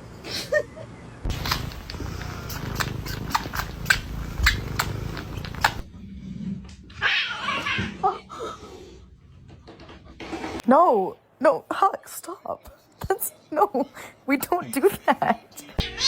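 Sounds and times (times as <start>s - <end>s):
cat purring: 1.3s - 6.8s
cat crying: 7.0s - 8.2s, 15.8s - 16.0s.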